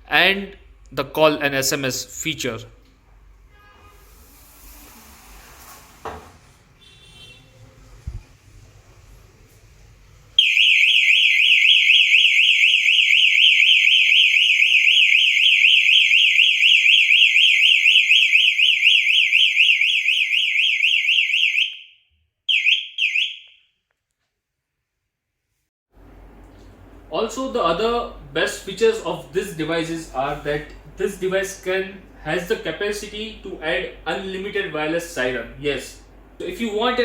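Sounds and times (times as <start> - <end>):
warbling electronic alarm: 10.4 - 23.5.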